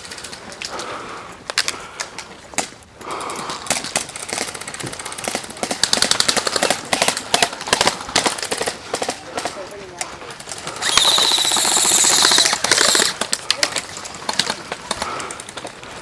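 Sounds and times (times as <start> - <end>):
airsoft guns firing: 3.7 - 9.6, 10.3 - 14.6.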